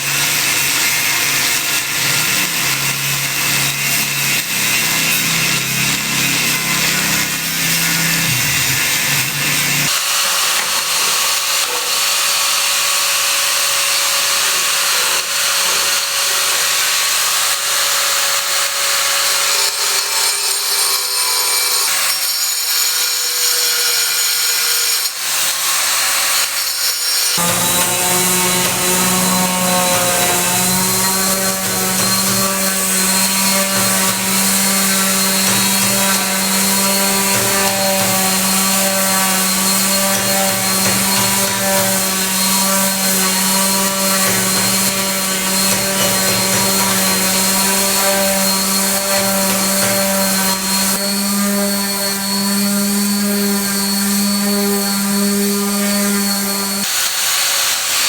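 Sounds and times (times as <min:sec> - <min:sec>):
power tool motor running: 0:00.0 - 0:10.0, 0:27.4 - 0:57.4.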